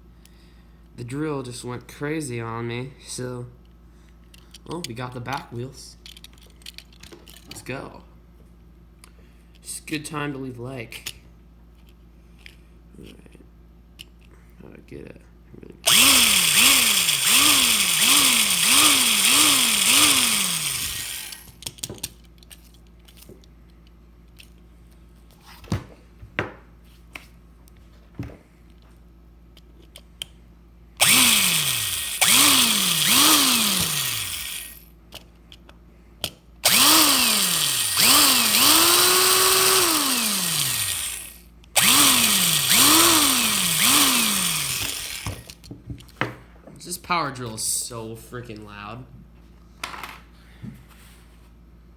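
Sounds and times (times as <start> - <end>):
power drill drilling into metal: 15.9 - 21.5, 31.0 - 34.8, 36.6 - 45.5.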